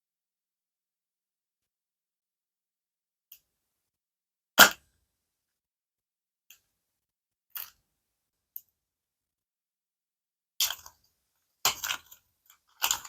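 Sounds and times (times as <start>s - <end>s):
toy packaging clicks and taps: 10.6s - 11.0s, 11.7s - 13.0s.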